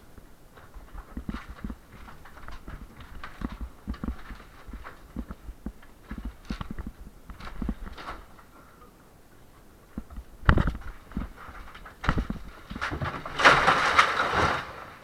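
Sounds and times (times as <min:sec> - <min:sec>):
dull thuds and knocks: 0:10.0 - 0:14.8.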